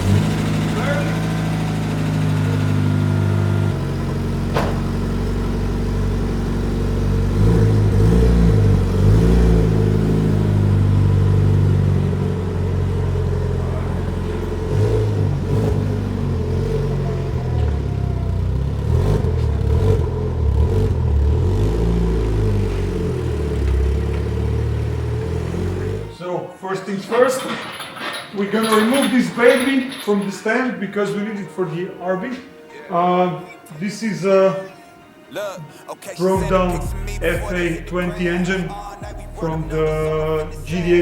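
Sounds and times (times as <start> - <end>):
car engine revving: 0.0 - 26.2.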